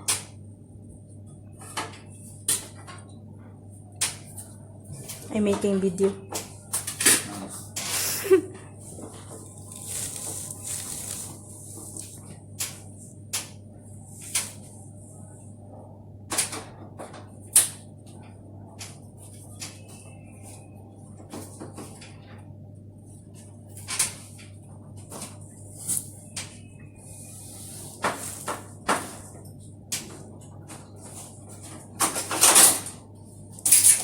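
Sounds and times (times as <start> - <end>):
steady low hum: 0.0 - 21.3
air conditioner casing clicks: 0.0 - 27.0, 27.9 - 34.0.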